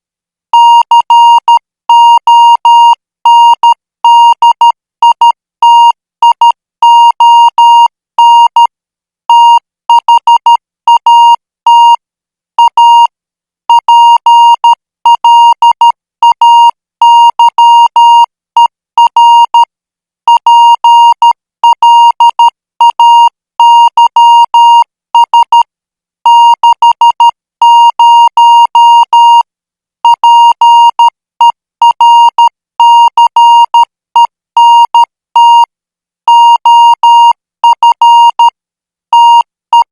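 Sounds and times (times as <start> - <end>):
morse code tone: 20.3 - 25.6, 26.3 - 29.4, 31.8 - 35.7, 36.3 - 38.5, 39.1 - 39.9.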